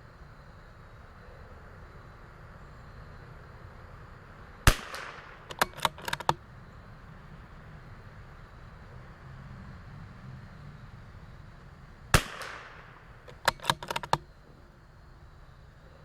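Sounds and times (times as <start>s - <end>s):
rifle shot: 4.6s - 6.4s, 12.1s - 14.2s
rifle bolt metallic clicks: 4.7s - 6.4s, 12.2s - 14.3s.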